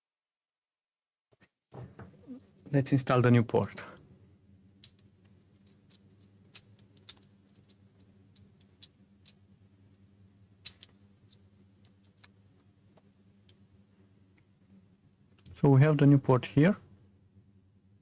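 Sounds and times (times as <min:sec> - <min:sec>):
faint electrical hum: 0:01.8 - 0:18.0
small tools clicking and tapping: 0:04.8 - 0:09.4, 0:10.6 - 0:12.4.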